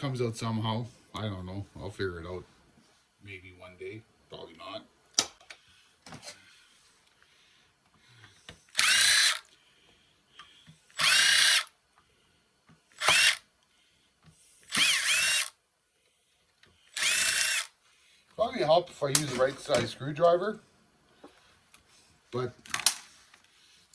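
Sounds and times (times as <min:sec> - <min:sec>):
power drill whining: 0:08.7 - 0:09.5, 0:10.9 - 0:11.7, 0:12.9 - 0:13.4, 0:14.7 - 0:15.6, 0:16.8 - 0:17.8.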